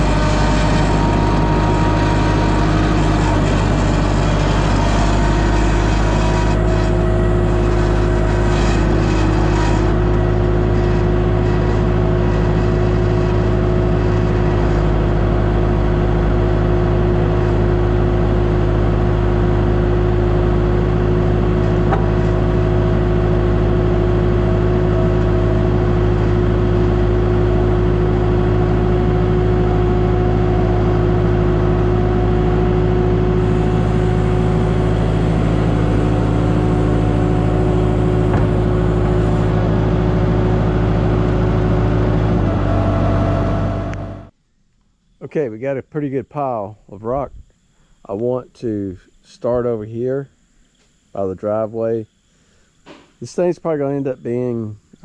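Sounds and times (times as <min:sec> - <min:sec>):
construction equipment engine running: 0:00.0 - 0:44.4.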